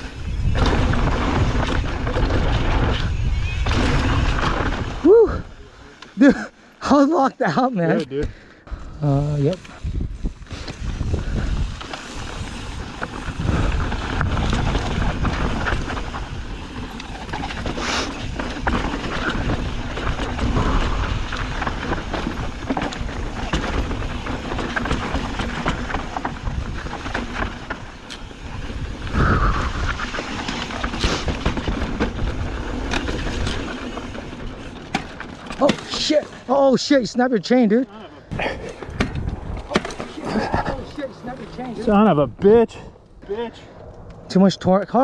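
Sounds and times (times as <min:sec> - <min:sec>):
wind buffeting microphone: 0:08.7 - 0:30.2
bike knocking and rattling: 0:08.8 - 0:29.2, 0:30.0 - 0:36.2, 0:38.4 - 0:41.9.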